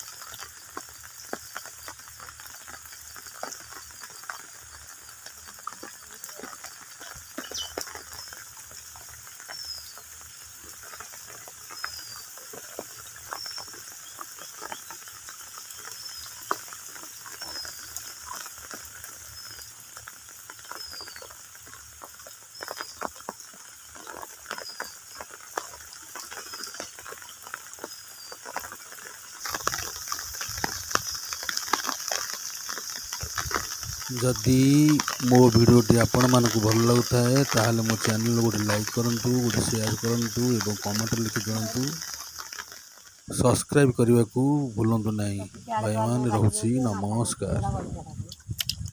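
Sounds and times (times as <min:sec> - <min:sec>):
small water splashes: 0:00.0 - 0:43.4
high hiss: 0:00.0 - 0:48.6
high falling chirp: 0:07.3 - 0:08.4.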